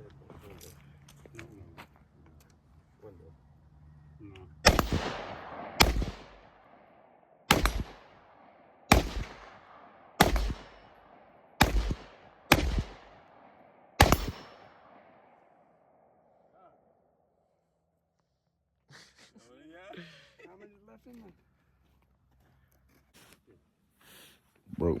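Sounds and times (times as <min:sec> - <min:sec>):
rifle shots: 0:04.6 - 0:15.4.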